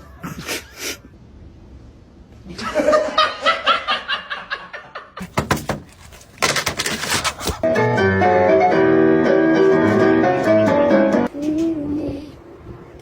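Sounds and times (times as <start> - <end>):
person laughing: 0.0 - 1.1.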